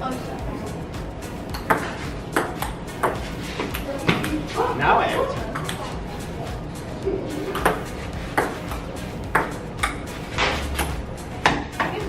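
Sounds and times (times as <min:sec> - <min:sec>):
ping pong ball clicking: 0:01.5 - 0:04.4, 0:05.5 - 0:05.8, 0:07.5 - 0:10.0.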